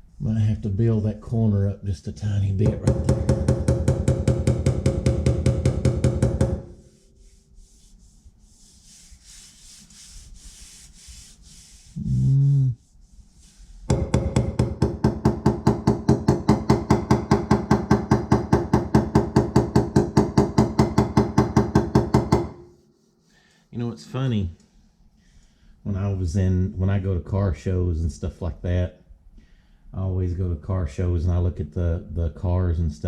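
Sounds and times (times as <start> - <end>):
hammer tapping on sheet metal: 2.6 - 6.9, 13.9 - 22.8.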